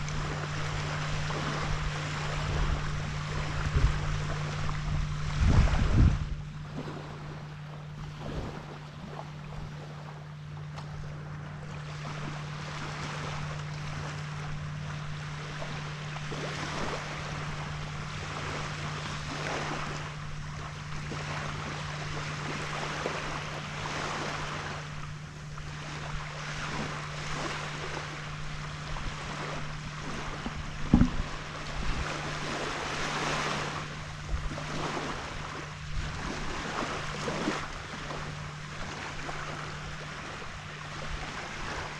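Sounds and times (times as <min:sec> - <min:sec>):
wind buffeting on microphone: 0:00.0 - 0:09.1, 0:28.2 - 0:38.6
small waves washing onto beach: 0:00.0 - 0:41.9
steady low hum: 0:00.0 - 0:41.9
sharp knock: 0:30.9 - 0:31.2.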